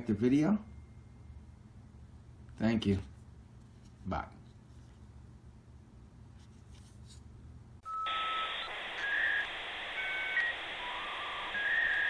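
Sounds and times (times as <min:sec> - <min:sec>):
room hum: 0:00.0 - 0:12.0
electronic hiss: 0:08.1 - 0:12.0.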